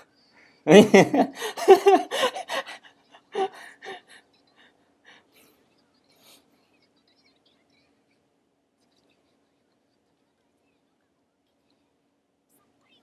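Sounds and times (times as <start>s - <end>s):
person gasping: 1.3s - 4.2s.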